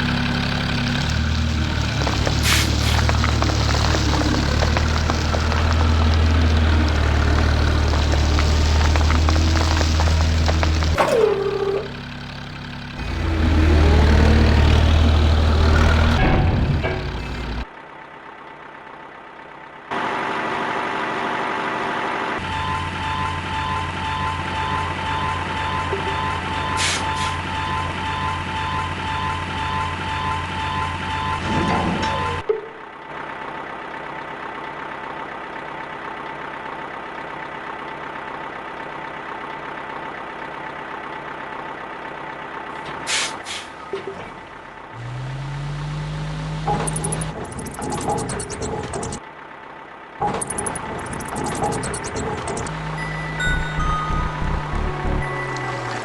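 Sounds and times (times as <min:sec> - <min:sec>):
heavy truck engine running: 0:00.0 - 0:56.0
short bursts of hiss: 0:02.4 - 0:03.0.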